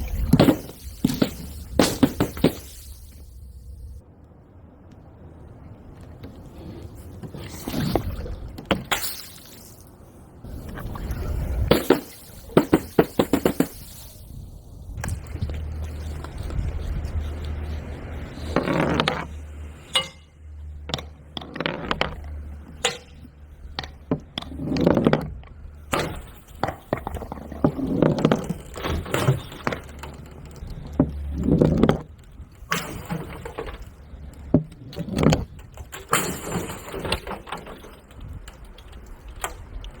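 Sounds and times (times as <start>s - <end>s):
steady low hum: 9.9s - 35.6s.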